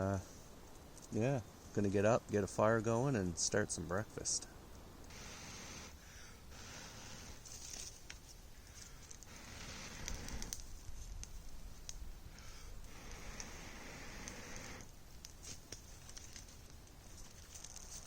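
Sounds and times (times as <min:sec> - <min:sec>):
sleeping bag and tarp rustling: 0:07.4 - 0:11.6, 0:15.4 - 0:18.0
small clicks: 0:07.6 - 0:18.0.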